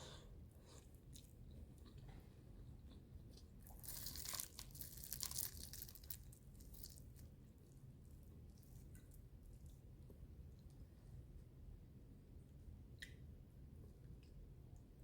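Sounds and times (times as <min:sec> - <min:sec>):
crunching crispy food: 0:03.6 - 0:07.4.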